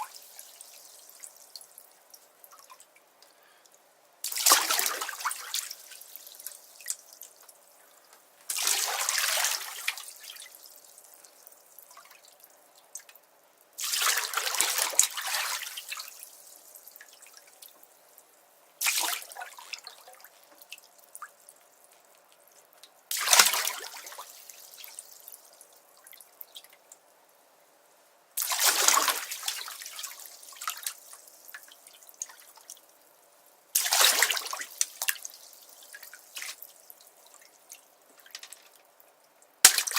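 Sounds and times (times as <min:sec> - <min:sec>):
water trickling and dripping: 0:00.0 - 0:27.4, 0:28.4 - 0:39.9
bathtub water splashing: 0:04.2 - 0:07.4, 0:08.5 - 0:11.0, 0:13.8 - 0:16.3, 0:18.8 - 0:20.8, 0:23.1 - 0:25.1, 0:28.4 - 0:32.6, 0:33.8 - 0:38.8, 0:39.7 - 0:39.9.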